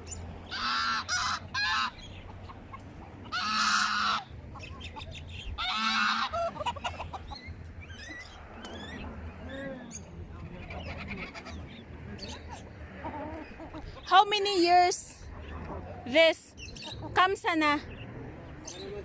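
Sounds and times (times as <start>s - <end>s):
goose honking: 0.5s - 2.0s, 3.2s - 4.3s, 5.6s - 7.2s.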